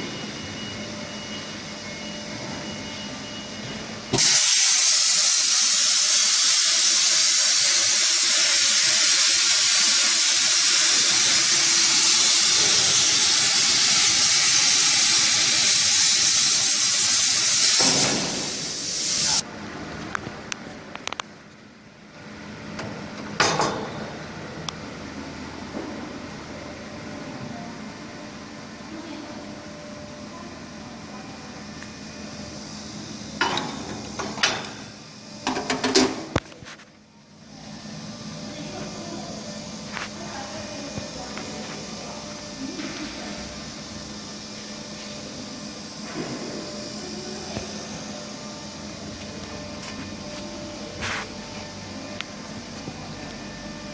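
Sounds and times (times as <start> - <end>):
machine background hum: 0.0 - 53.9
plasma torch hissing: 4.2 - 19.4.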